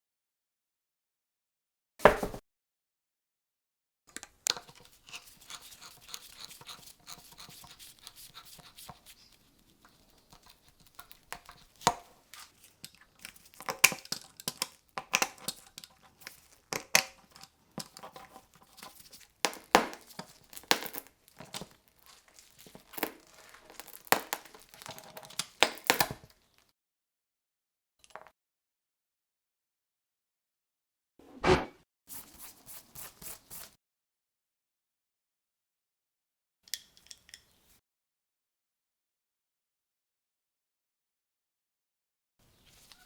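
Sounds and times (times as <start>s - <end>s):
tools clicking and scraping: 4.2s - 26.2s
crinkling tearing rustle: 9.1s - 26.7s.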